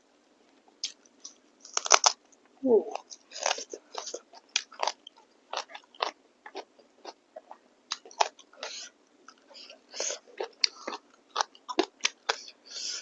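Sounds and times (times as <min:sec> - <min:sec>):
person chewing wetly: 0:02.9 - 0:13.0.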